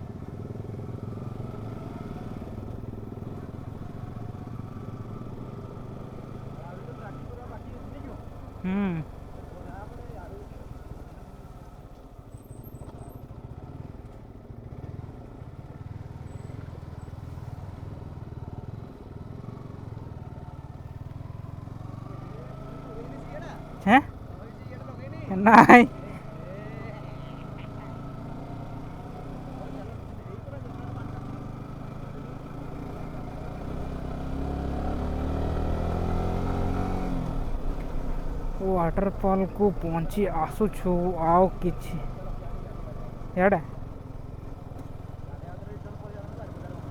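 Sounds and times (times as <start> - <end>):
motorcycle engine running: 0.0 - 11.8, 13.4 - 46.9.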